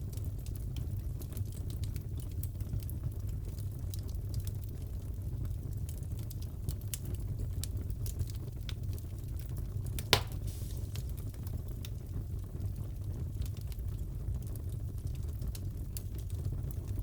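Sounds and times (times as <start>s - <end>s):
wood fire crackling: 0.0s - 17.0s
loud pop of fire: 10.0s - 11.4s.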